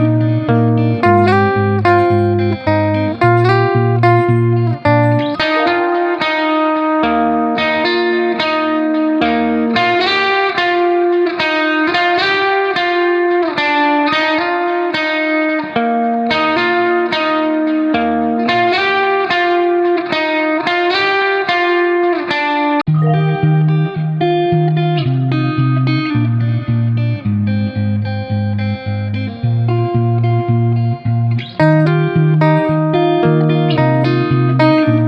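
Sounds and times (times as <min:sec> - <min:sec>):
bass line: 0:00.0 - 0:06.0, 0:22.9 - 0:35.0
plucked guitar melody: 0:00.0 - 0:35.0.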